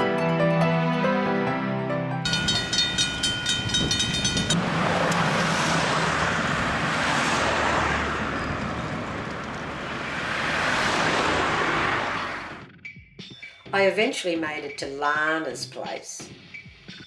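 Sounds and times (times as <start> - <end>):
music: 0.0 - 4.5, 12.5 - 17.0
cars going by: 2.3 - 12.8.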